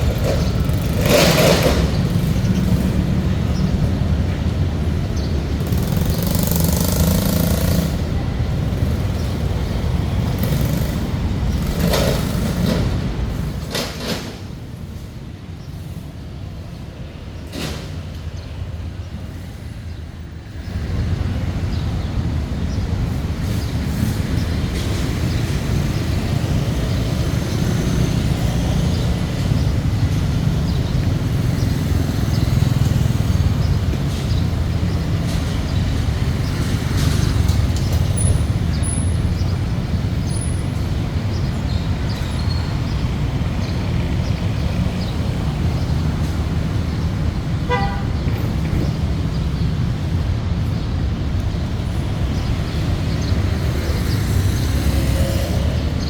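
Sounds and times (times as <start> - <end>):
road traffic rumble: 0.0 - 56.0
car horn beep: 47.7 - 48.3.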